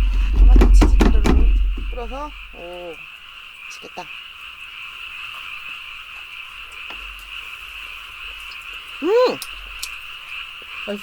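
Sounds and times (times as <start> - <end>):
frogs calling: 0.0 - 11.0
person's short voiced sound: 9.0 - 9.4.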